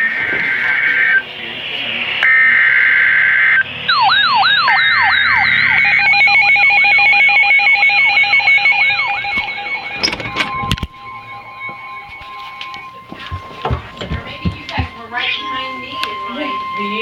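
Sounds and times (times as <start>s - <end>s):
falling siren-like sweep: 0.0s - 17.0s
rapidly pulsing beeps: 0.0s - 17.0s
steady beep tone: 0.0s - 17.0s.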